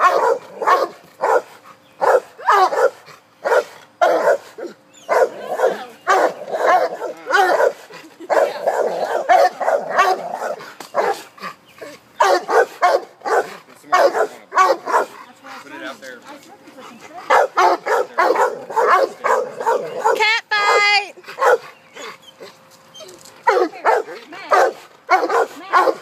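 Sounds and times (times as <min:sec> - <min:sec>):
dogs barking: 0:00.0 - 0:16.0, 0:16.9 - 0:22.6, 0:23.4 - 0:26.0.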